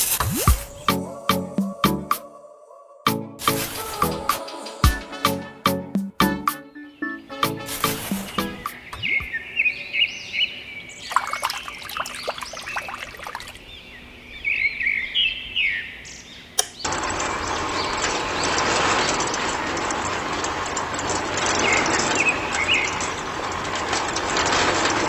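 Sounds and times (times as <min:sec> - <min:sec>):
birds chirping: 0:08.3 - 0:14.1
single sharp click: 0:16.6 - 0:16.9.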